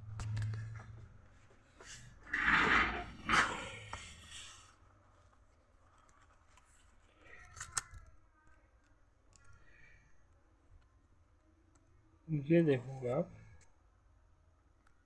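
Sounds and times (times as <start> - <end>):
light scraping of laptop parts: 0.1 - 8.0
small clicks: 6.0 - 8.1.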